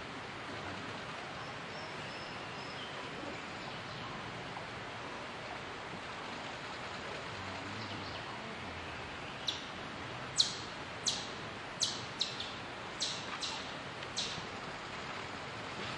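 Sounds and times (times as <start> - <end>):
steady background hiss: 0.0 - 15.9
woodpecker calling: 10.4 - 14.4.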